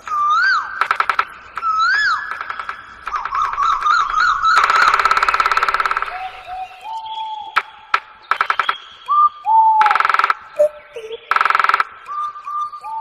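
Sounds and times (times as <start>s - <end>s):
sharp clicks: 0.0s - 6.2s, 6.9s - 9.2s, 9.8s - 13.0s
bird buzzy rattles: 0.8s - 6.2s, 11.3s - 12.0s
bird whistling notes: 1.4s - 13.0s.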